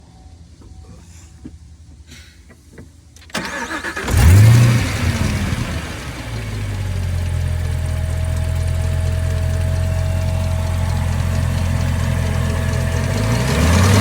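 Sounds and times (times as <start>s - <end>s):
starter cranking: 3.2s - 4.5s
car engine revving and idling: 3.4s - 14.0s.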